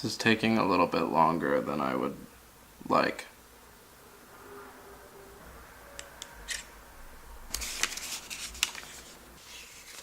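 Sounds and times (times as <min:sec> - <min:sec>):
rustling and scraping: 0:07.5 - 0:10.0.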